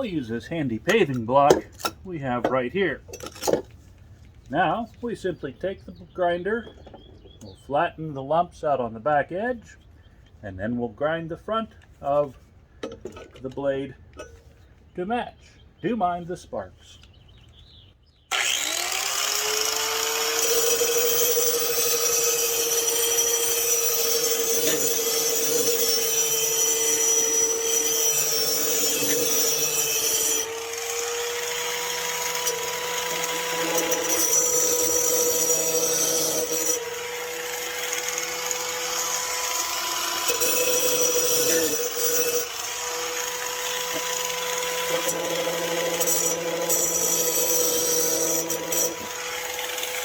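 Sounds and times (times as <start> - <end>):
angle grinder whine: 18.3 - 50.0
grinding rasp on metal blade: 18.4 - 50.0.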